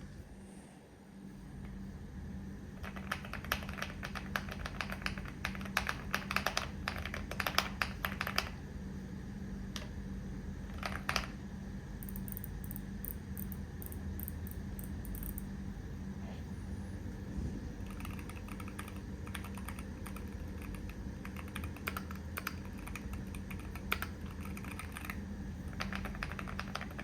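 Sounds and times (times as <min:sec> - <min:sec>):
keyboard typing: 0:02.8 - 0:08.6, 0:10.7 - 0:11.4, 0:17.8 - 0:27.0.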